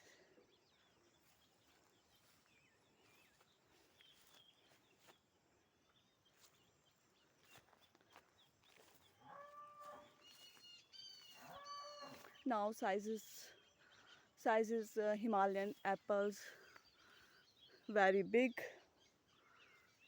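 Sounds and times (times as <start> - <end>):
bird chirps: 5.8 - 20.0
farm animal call: 9.2 - 12.4.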